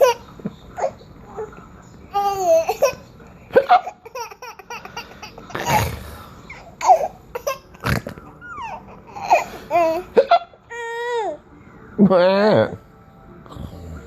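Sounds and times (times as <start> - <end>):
baby giggling and laughing: 2.1 - 5.9, 6.5 - 7.8, 8.4 - 11.3.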